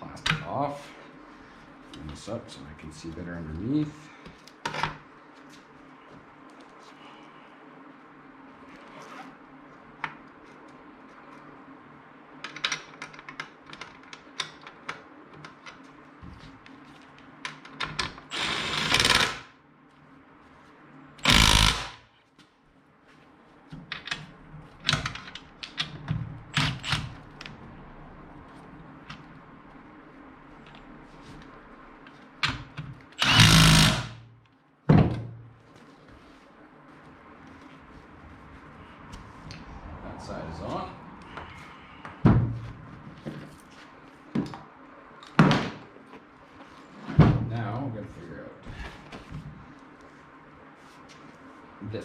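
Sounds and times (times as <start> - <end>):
steady low hum: 0.0 - 52.0
power tool bursts: 18.3 - 19.5, 21.2 - 22.0, 33.2 - 34.2.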